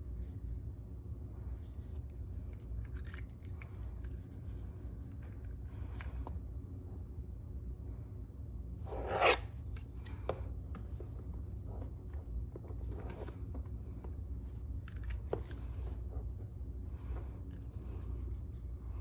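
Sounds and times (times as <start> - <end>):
lens pen rubbing a lens: 8.9 - 9.6.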